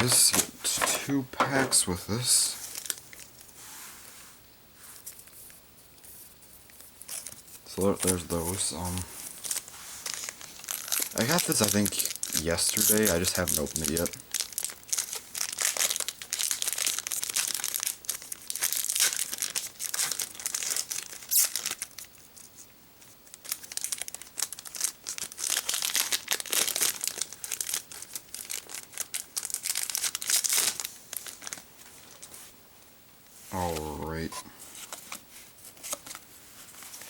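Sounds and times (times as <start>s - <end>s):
foil wrapper crinkling and tearing: 1.6s - 3.4s, 7.1s - 22.5s, 23.2s - 32.4s.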